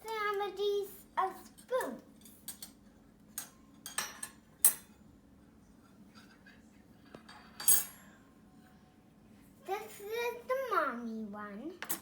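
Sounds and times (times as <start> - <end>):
metal spoons clinking: 7.3 - 8.1.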